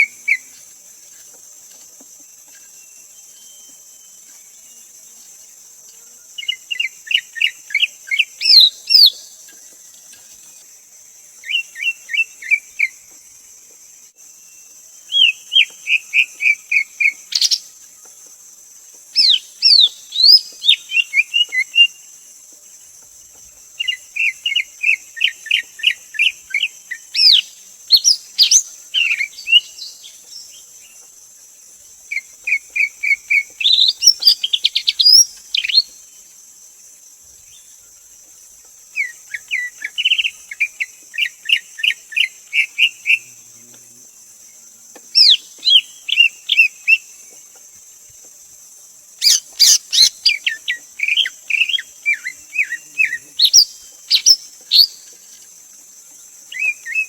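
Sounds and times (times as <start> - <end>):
steady high-pitched hiss: 0.0 - 57.0
bird singing chirps and whistles: 2.8 - 4.2, 19.2 - 22.0, 23.8 - 30.1, 32.2 - 36.0, 45.2 - 47.0, 49.2 - 55.1.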